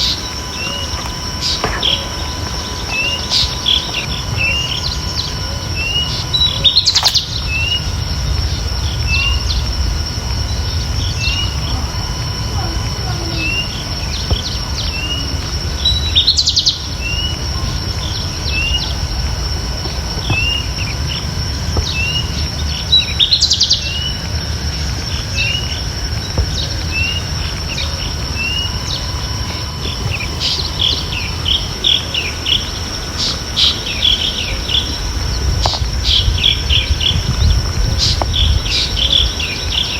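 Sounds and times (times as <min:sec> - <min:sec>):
high-pitched insect drone: 0:00.0 - 0:39.9
low background rumble: 0:00.0 - 0:39.9
small birds chirping: 0:00.0 - 0:39.9
trilled bird phrase: 0:00.0 - 0:39.9.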